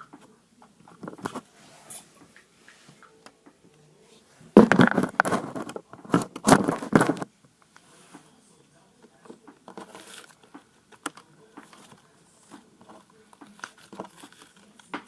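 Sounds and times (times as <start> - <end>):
crinkling handling noise: 4.5 - 8.2, 9.1 - 15.0.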